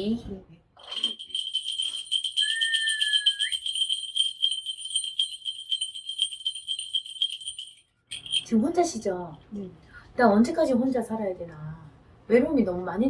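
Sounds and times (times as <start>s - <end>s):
bell rattle jingling: 0.8s - 8.7s.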